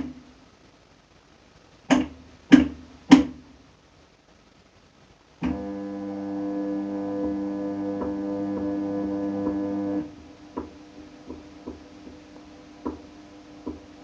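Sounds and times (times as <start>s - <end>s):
washing machine knocking: 1.9s - 3.4s, 7.2s - 8.8s, 9.4s - 9.7s, 10.6s - 12.2s, 12.8s - 14.0s
washing machine motor humming: 5.4s - 14.0s.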